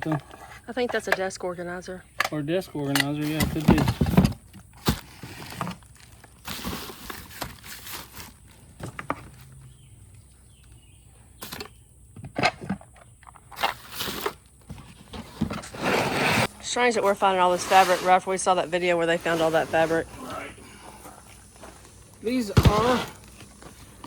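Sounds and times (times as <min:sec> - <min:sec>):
rustling of packing: 0:03.2 - 0:09.8, 0:13.5 - 0:24.0.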